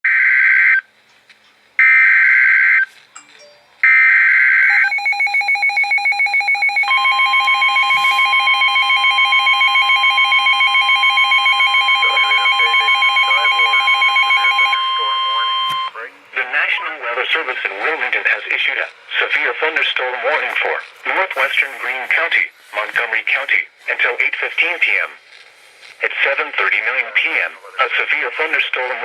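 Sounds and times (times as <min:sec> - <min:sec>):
steady high tone: 0:04.7 - 0:17.1.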